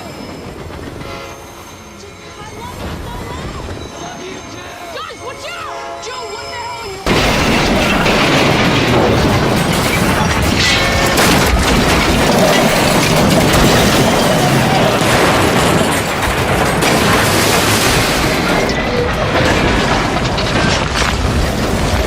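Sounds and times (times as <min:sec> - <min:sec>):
crashing and booms: 0:07.1 - 0:22.0
explosions: 0:07.1 - 0:22.0.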